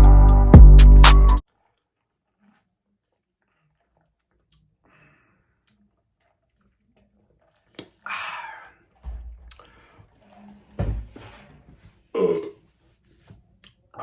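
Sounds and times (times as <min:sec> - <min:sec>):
chewing: 0:01.6 - 0:10.6.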